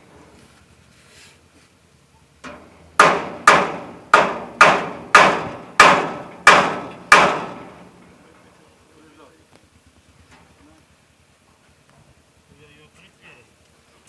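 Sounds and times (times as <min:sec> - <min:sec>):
hammer blows on metal: 0:02.5 - 0:07.9.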